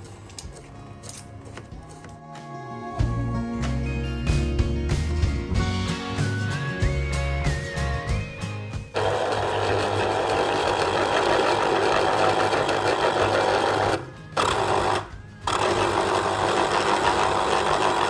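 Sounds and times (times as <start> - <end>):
small electric motor running: 9.0 - 18.0.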